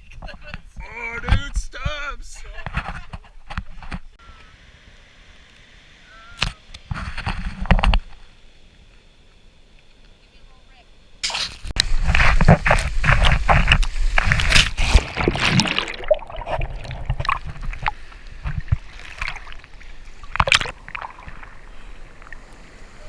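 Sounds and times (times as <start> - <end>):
surf water sloshing and splashing: 11.8 - 23.0.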